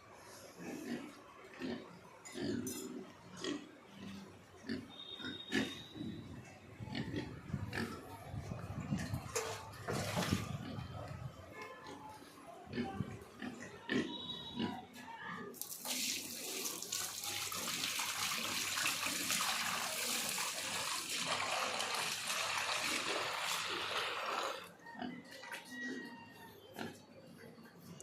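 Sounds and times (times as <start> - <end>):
water running hard: 15.6 - 24.7.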